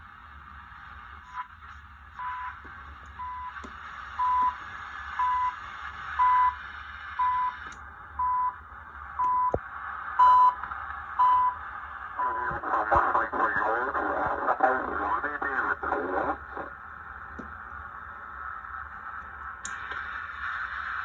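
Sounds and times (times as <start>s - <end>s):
radio hiss and static: 0.0s - 21.0s
high beep signal on radio: 2.2s - 2.6s, 3.2s - 3.6s, 4.2s - 4.6s, 5.2s - 5.6s, 6.2s - 6.6s, 7.2s - 7.6s, 9.2s - 9.6s, 10.2s - 10.6s, 11.2s - 11.6s, 12.2s - 12.6s.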